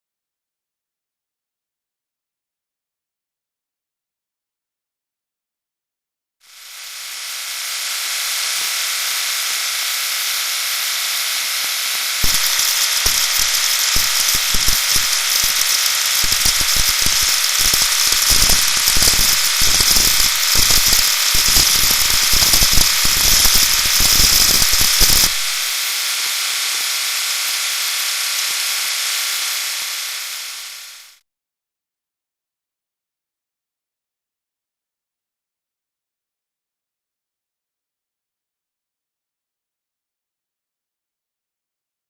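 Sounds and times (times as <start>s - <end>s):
engine running: 6.5s - 31.2s.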